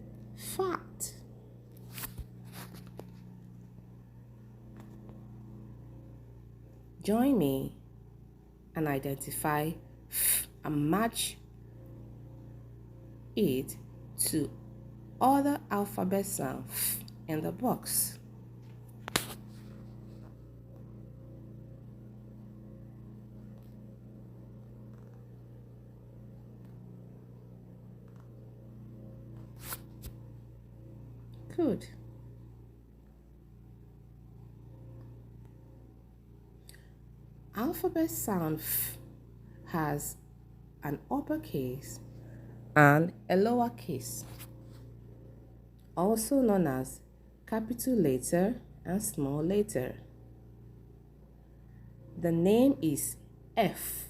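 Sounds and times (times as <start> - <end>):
low room hum: 0.0 - 54.0
faint clicks and rustles: 1.6 - 3.9.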